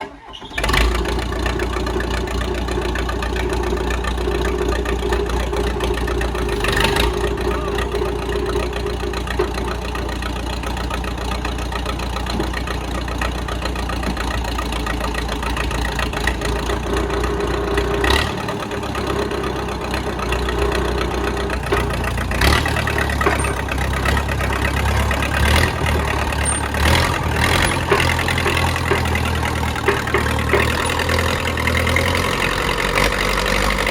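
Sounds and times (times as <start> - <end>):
bulldozer engine idling: 0.0 - 33.9
sharp metal clanks: 22.6 - 24.3, 26.3 - 31.4.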